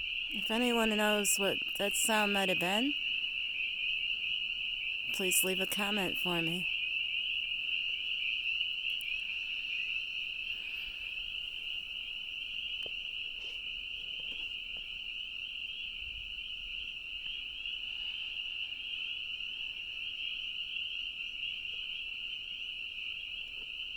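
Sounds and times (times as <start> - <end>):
chorus of peeping frogs: 0.0 - 23.9.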